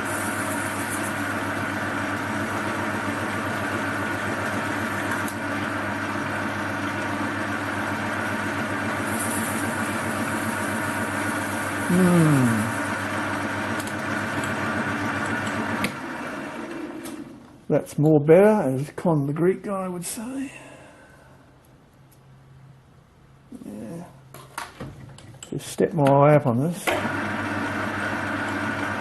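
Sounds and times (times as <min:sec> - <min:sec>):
lathe motor hum: 0:00.0 - 0:17.4, 0:26.9 - 0:29.0.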